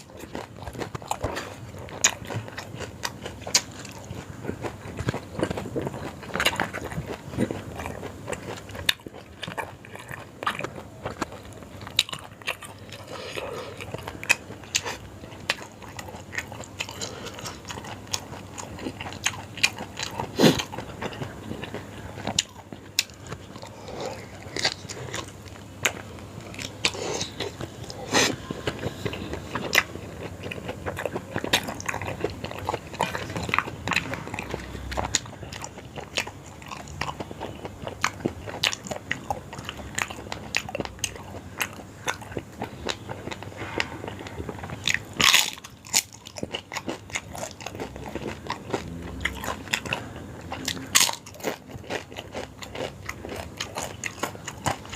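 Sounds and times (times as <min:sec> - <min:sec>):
chewing and biting food: 0:00.0 - 0:54.9
sharp crunches while eating: 0:00.0 - 0:54.9.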